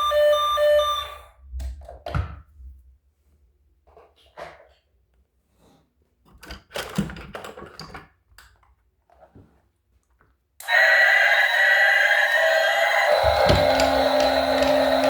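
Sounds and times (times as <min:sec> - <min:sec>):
plastic toys clicking and rattling: 0:06.4 - 0:08.6
steady electronic held tones: 0:10.6 - 0:15.0.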